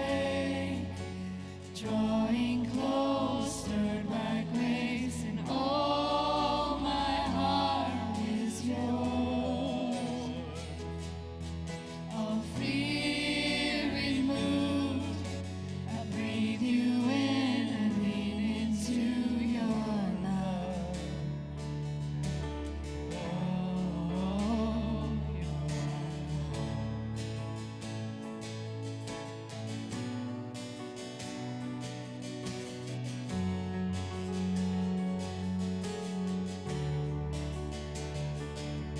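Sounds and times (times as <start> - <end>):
voices singing with vibrato: 0.0 - 11.1, 11.8 - 21.2.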